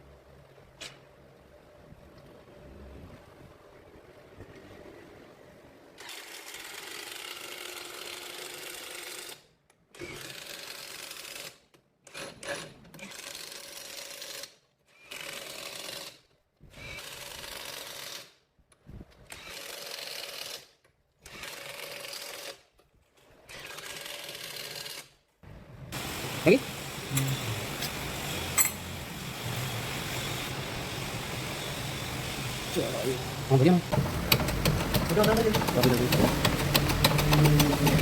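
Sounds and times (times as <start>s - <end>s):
power tool running: 26.0s - 38.0s.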